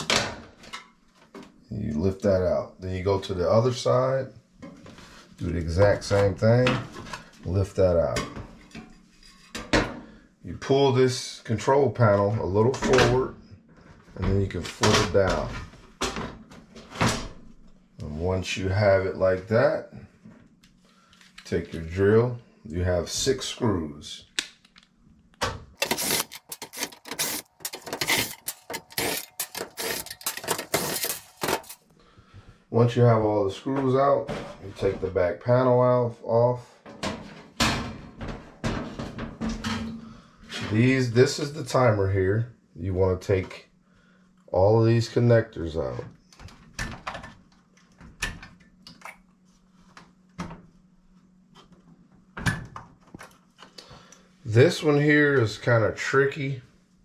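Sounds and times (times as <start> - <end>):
cordless drill backing out screws: 25.8 - 31.8
scraping and rattling: 25.8 - 31.8.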